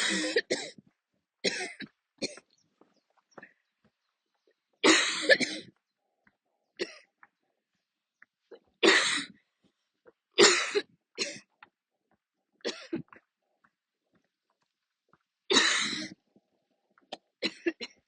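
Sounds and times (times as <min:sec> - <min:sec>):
woman coughing: 0:00.0 - 0:00.8, 0:01.4 - 0:02.4, 0:04.8 - 0:05.7, 0:10.4 - 0:11.5, 0:12.7 - 0:13.1, 0:15.5 - 0:16.2, 0:17.4 - 0:18.0.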